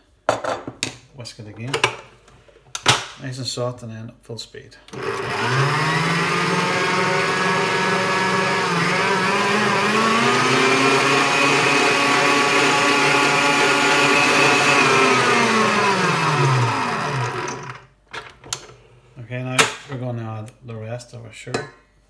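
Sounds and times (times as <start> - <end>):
electric mixer motor whisking: 4.9 - 17.9.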